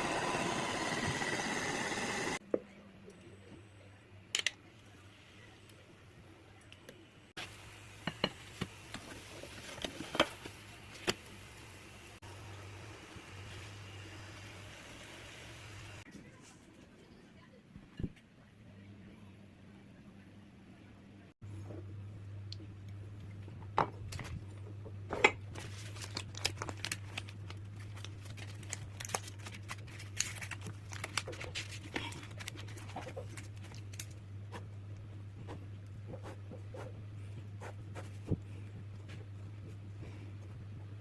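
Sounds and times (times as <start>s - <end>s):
steady low hum: 31.6s - 41.0s.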